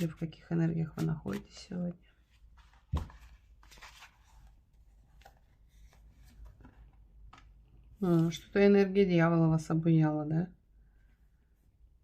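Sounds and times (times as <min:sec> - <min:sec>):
cards rustling and tapping: 0:00.0 - 0:01.7, 0:02.3 - 0:07.6.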